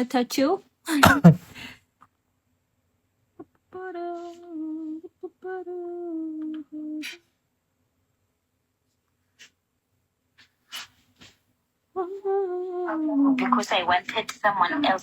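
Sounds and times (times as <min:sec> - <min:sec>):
person humming: 0:03.4 - 0:07.3, 0:11.9 - 0:13.5.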